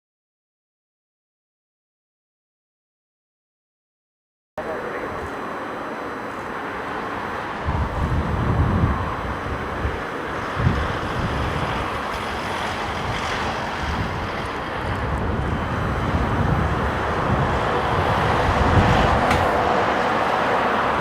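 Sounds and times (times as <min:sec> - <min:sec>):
jet engines of airliner: 0:04.6 - 0:21.0
wind buffeting microphone: 0:07.5 - 0:21.0.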